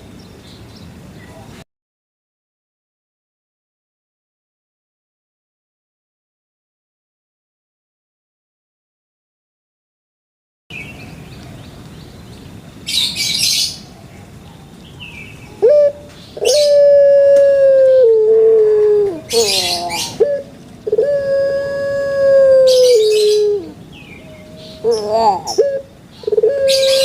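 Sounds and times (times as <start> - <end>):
dove cooing: 15.5 - 27.0.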